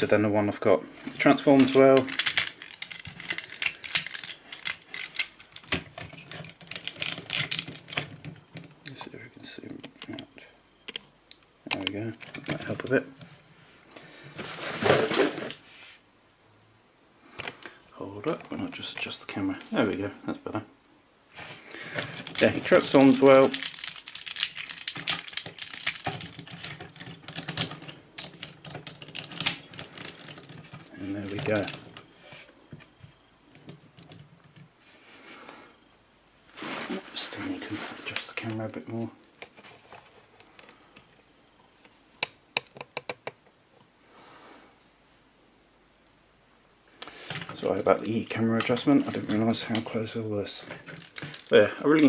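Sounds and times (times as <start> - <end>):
plastic toy parts clicking: 1.6 - 8.7, 22.0 - 32.0, 50.8 - 51.6.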